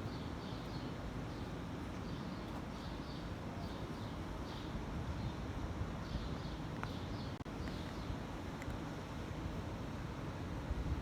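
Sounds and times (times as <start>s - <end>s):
bird chirping: 0.0s - 5.4s.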